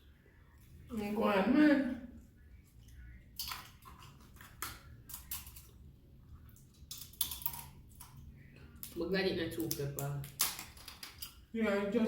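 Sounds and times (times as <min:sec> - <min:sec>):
shells cracking and crunching: 0:06.7 - 0:08.2, 0:09.6 - 0:11.4.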